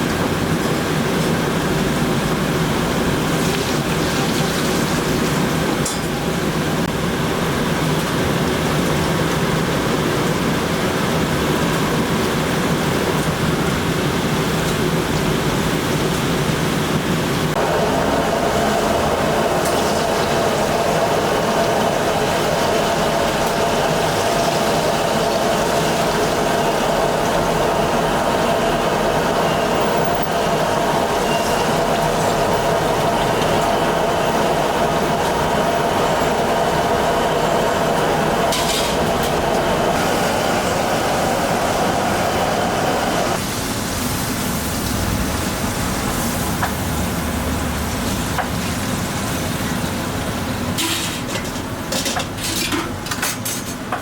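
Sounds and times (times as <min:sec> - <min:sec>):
food frying: 0:00.0 - 0:06.6, 0:17.3 - 0:53.0
kitchen equipment roar: 0:00.0 - 0:54.0
utensils and pans clinking: 0:50.8 - 0:54.0.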